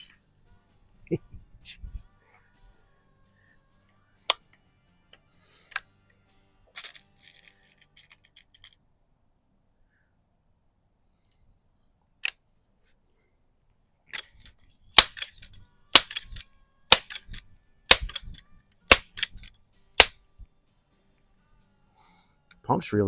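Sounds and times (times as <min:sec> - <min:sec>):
air rifle click: 0:14.1 - 0:20.2.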